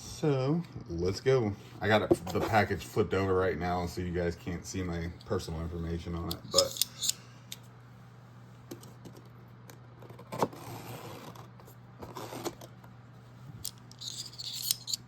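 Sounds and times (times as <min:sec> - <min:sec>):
steady low hum: 0:00.0 - 0:15.0
clicks and handling: 0:06.2 - 0:07.6, 0:13.6 - 0:15.0.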